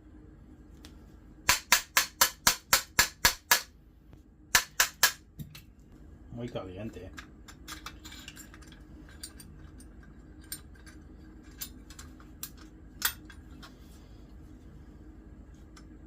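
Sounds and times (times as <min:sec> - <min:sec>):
steady low hum: 0:00.0 - 0:16.0
metal tools clicking and tapping: 0:07.0 - 0:13.7.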